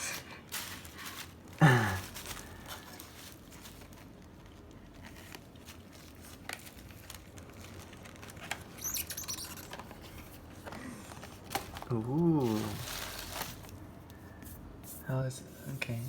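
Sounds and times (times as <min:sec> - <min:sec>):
packaging crinkling: 0:00.0 - 0:14.2
packaging taps and rustles: 0:09.6 - 0:13.8.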